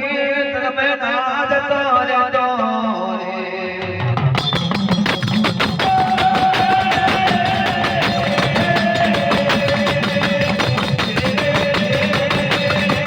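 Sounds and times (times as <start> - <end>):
fast percussion: 3.8 - 13.0.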